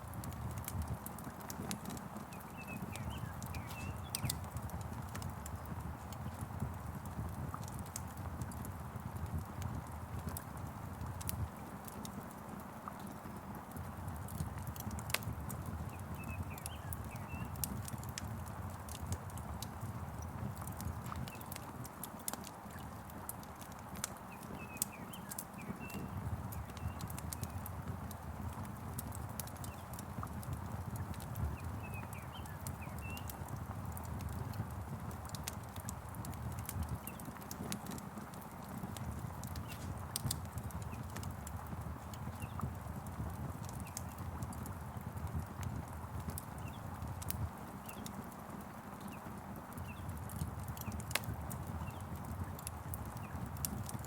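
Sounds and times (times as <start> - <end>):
wood fire crackling and popping: 0.0 - 54.0
faint bird chirps: 2.3 - 4.5, 15.8 - 17.6, 24.3 - 27.7, 31.4 - 33.4.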